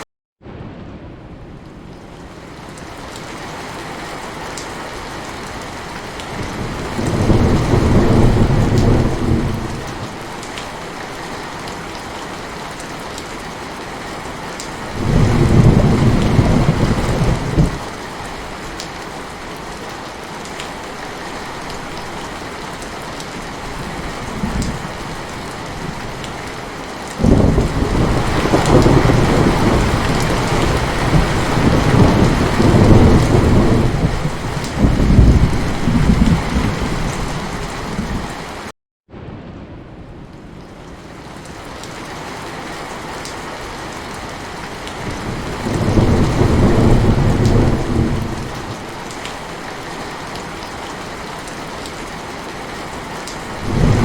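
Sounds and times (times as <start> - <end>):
heavy rain falling: 0.4 - 54.0
low rolling thunder: 6.2 - 10.2, 14.9 - 17.9, 27.2 - 38.4, 44.9 - 48.9, 53.6 - 54.0.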